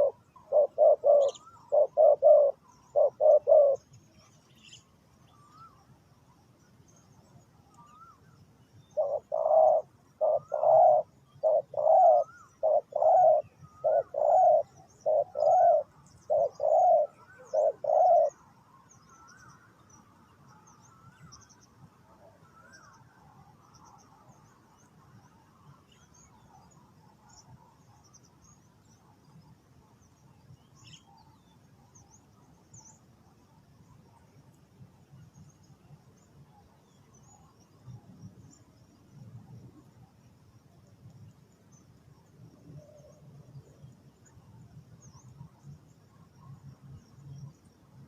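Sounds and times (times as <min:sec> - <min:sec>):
dove cooing: 0:00.0 - 0:03.9, 0:09.0 - 0:18.4
small birds chirping: 0:00.0 - 0:20.0.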